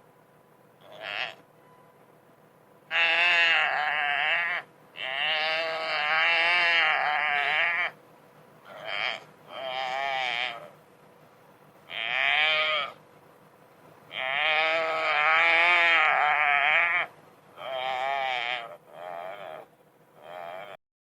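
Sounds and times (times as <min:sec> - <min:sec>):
wildebeest distress cries: 0:00.8 - 0:01.4, 0:02.9 - 0:08.0, 0:08.6 - 0:10.8, 0:11.9 - 0:13.0, 0:14.1 - 0:20.8.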